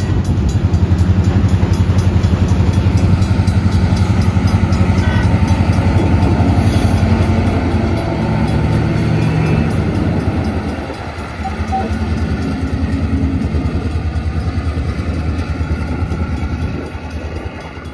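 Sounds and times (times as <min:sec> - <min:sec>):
diesel locomotive engine under load: 0:00.0 - 0:17.9.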